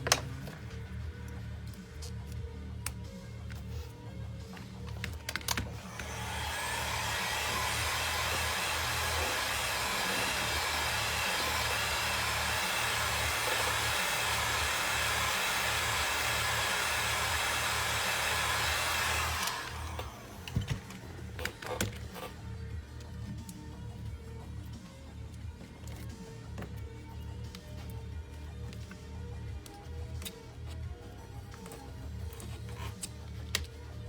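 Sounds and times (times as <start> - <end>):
hot-air blower hissing: 5.4 - 22.2.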